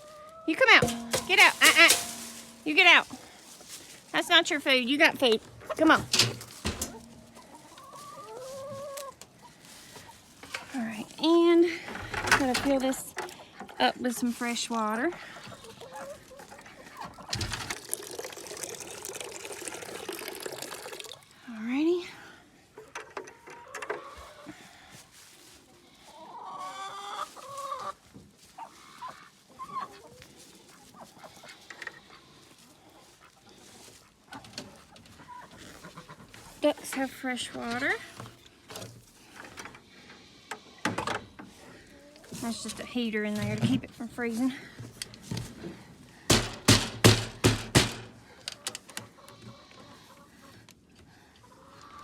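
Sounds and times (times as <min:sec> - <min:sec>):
chickens clucking: 0:00.0 - 0:17.7, 0:22.7 - 0:52.0
loud quick knocks: 0:46.3 - 0:48.1.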